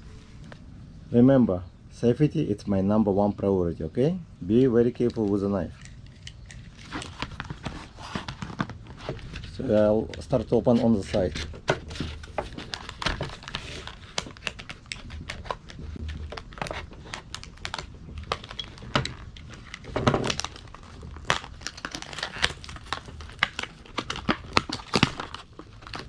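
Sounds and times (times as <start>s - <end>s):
packaging crinkling and crackling: 5.0s - 26.0s
knife cutting packaging: 5.8s - 9.6s, 10.2s - 26.0s.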